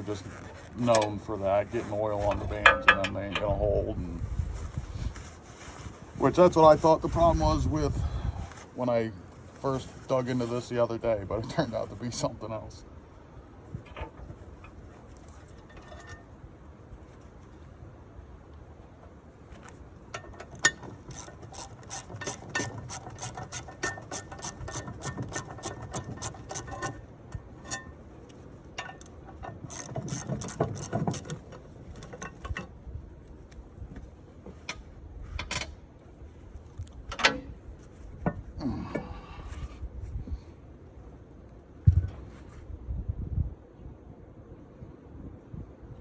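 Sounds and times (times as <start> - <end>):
metal tools clinking: 2.2 - 3.6
ratchet wrench clicking: 20.5 - 27.0, 28.8 - 31.4.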